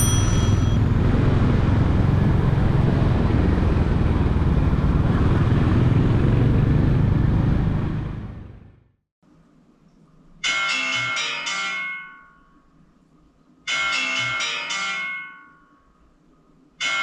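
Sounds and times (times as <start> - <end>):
motorcycle engine: 0.0 - 9.0.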